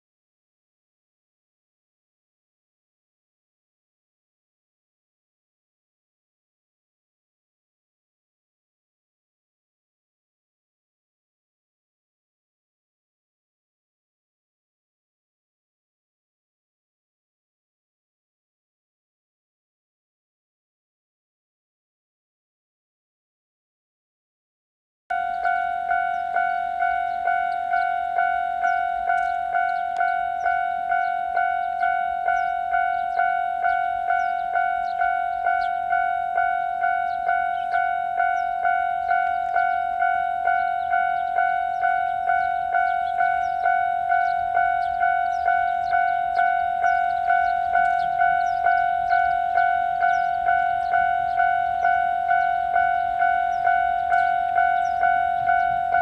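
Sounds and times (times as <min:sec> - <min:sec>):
level crossing warning bell: 0:25.1 - 0:56.0.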